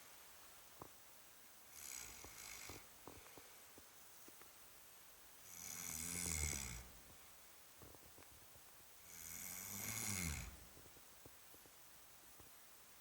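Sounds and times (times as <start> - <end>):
person snoring heavily: 1.7 - 2.9, 5.4 - 6.9, 9.1 - 10.6.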